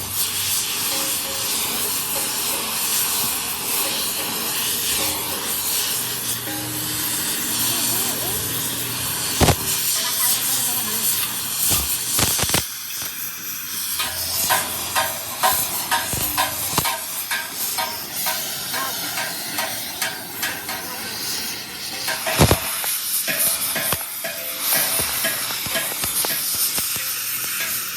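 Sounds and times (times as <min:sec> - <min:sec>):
arc welding hissing crackle: 0:00.0 - 0:27.9
sharp metallic knocks: 0:14.0 - 0:20.9, 0:22.0 - 0:27.9.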